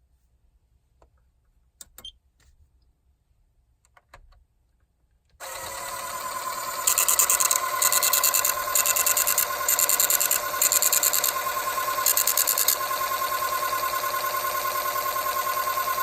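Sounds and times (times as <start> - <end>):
electronic tone with buzzing flutter: 6.8 - 16.0.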